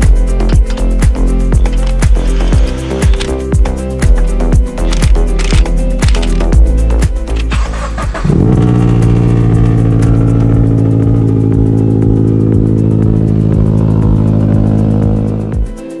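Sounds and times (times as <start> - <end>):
car engine revving: 7.4 - 15.8.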